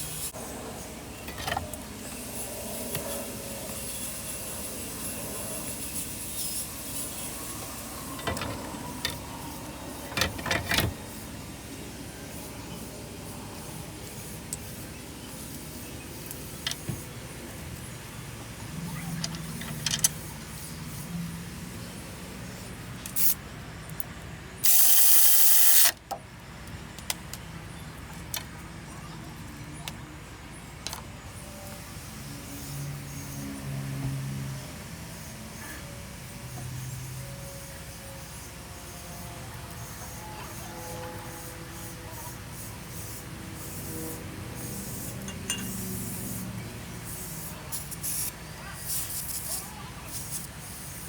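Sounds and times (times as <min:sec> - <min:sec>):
steady hiss: 0:24.6 - 0:26.0.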